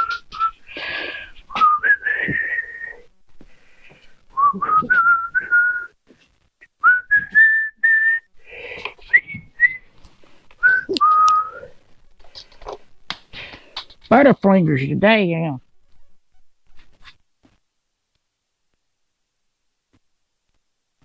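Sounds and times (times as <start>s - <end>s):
person whistling a tune: 0.0s - 0.7s, 1.5s - 3.1s, 4.4s - 6.0s, 6.7s - 8.3s, 9.0s - 9.8s, 10.6s - 11.7s.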